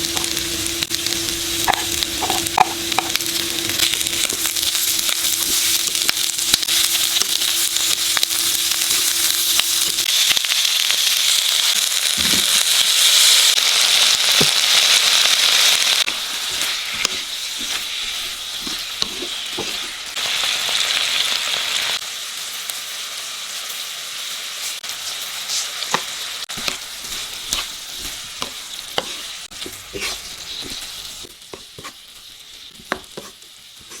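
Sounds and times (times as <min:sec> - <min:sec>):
food sizzling in a frying pan: 0:00.0 - 0:34.0
spatula clicking and scraping: 0:01.7 - 0:03.2, 0:16.1 - 0:20.1, 0:25.5 - 0:34.0.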